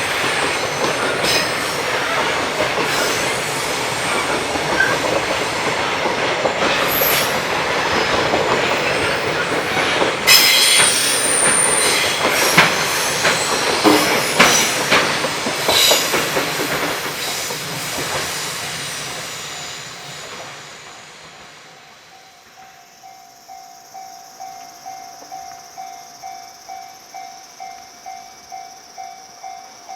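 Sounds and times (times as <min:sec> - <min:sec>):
high wheel squeal: 0:00.0 - 0:05.6, 0:08.8 - 0:14.8
wheels clacking over rail joints: 0:00.0 - 0:19.2.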